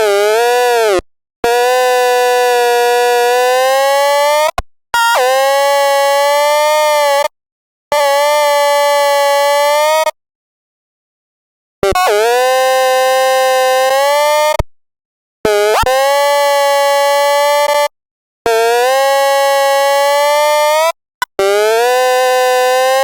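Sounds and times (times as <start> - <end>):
megaphone siren tone: 15.7 - 17.9, 18.5 - 23.0.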